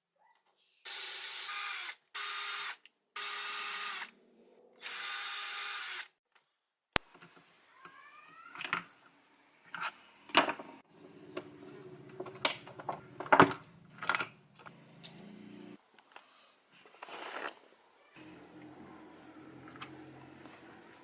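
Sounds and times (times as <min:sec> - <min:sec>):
metal parts clinking: 0:14.0 - 0:14.4.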